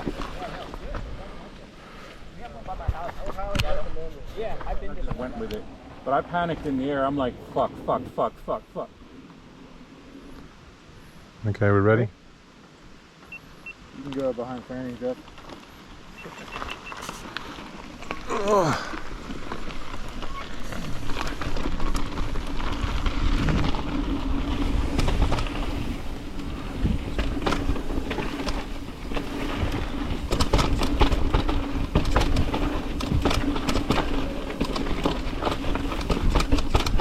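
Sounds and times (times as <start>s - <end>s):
bike tyres rumbling on dirt: 0.0s - 10.5s, 13.9s - 37.0s
bike rattling and clicking: 14.0s - 37.0s
wind on microphone: 19.8s - 37.0s.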